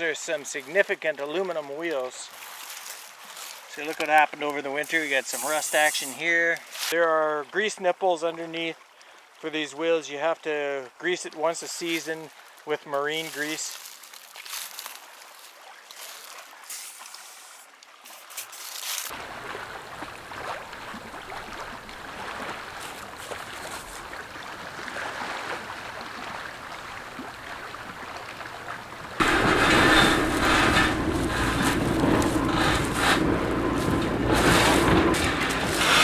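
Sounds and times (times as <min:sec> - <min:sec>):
engine running: 0:26.4 - 0:36.0.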